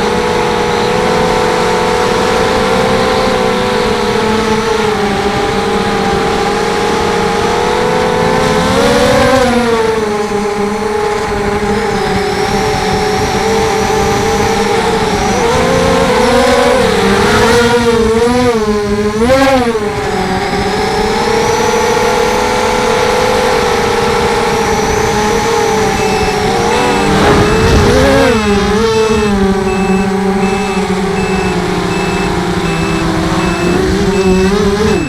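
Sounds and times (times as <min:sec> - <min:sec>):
quadcopter motors whining: 0:00.0 - 0:35.0
high beeping: 0:24.7 - 0:35.0.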